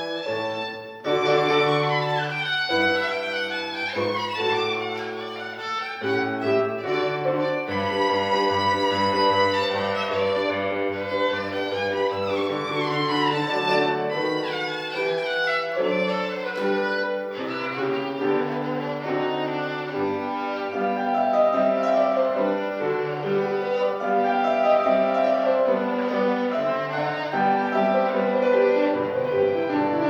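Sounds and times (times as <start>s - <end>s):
piano accompaniment: 0.0s - 30.0s
solo violin melody: 0.0s - 30.0s.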